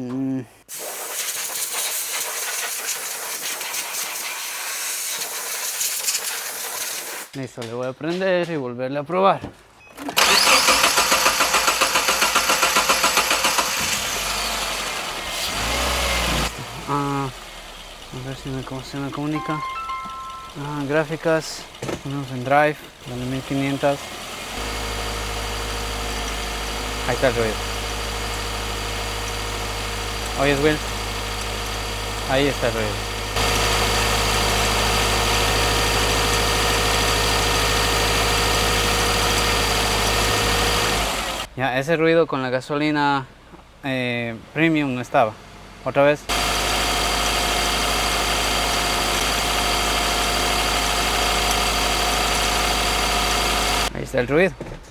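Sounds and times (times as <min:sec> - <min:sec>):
car engine cranking and idling: 0:09.6 - 0:41.9, 0:42.9 - 0:54.1.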